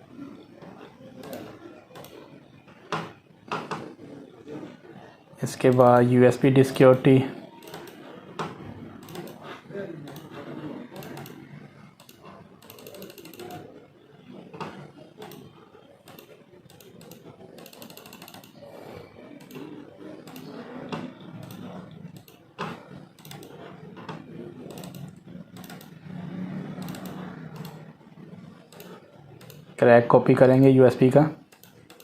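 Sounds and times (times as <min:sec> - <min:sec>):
computer mouse clicks: 0:00.6 - 0:04.0, 0:07.6 - 0:29.7, 0:31.5 - 0:32.0
keyboard clicks: 0:01.1 - 0:04.0, 0:07.5 - 0:13.8, 0:14.6 - 0:27.8, 0:28.6 - 0:29.7, 0:31.4 - 0:32.0.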